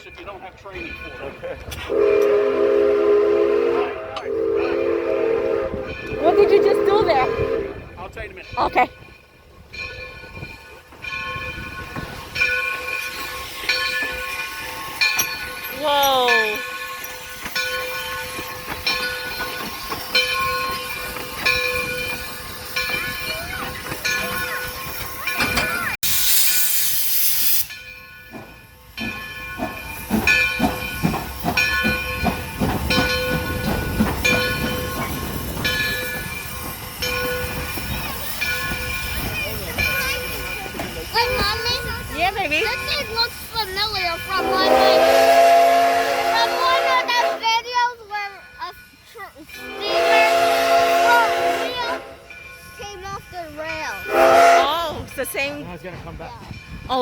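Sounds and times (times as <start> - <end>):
steam locomotive exhaust beats: 0.0 - 57.0
locomotive whistle blasts: 1.9 - 7.9, 44.4 - 47.4, 49.6 - 52.2, 54.1 - 54.8
steam hissing: 16.7 - 47.4.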